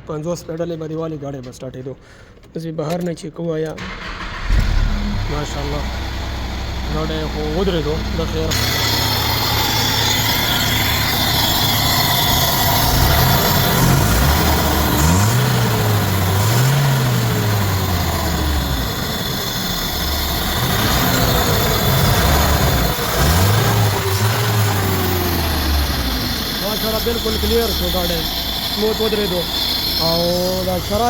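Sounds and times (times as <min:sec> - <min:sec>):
car engine idling and revving: 0:03.8 - 0:31.0.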